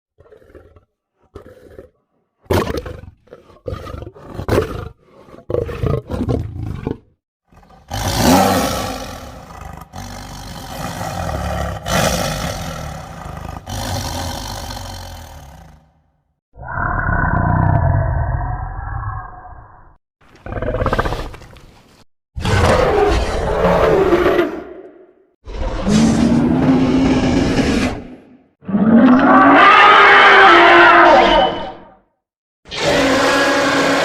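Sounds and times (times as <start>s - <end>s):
creature roaring: 7.6s - 15.9s, 16.6s - 21.2s, 22.4s - 31.9s, 32.7s - 34.0s
creature grunting calls: 7.8s - 15.8s, 16.6s - 19.9s.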